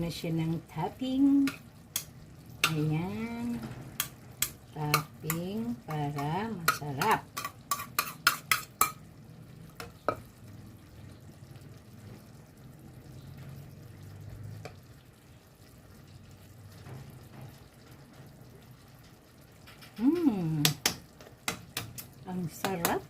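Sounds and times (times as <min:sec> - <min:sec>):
pan sizzling: 0:00.0 - 0:23.0
person humming: 0:20.0 - 0:20.7.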